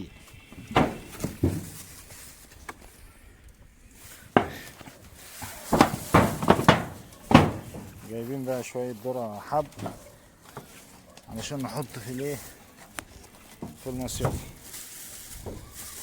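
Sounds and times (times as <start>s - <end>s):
objects knocking and clattering: 0.5s - 2.2s, 4.0s - 8.1s.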